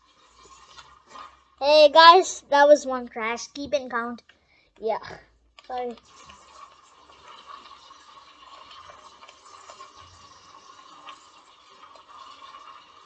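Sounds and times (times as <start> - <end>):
toy car electric motor whine: 6.0 - 13.0.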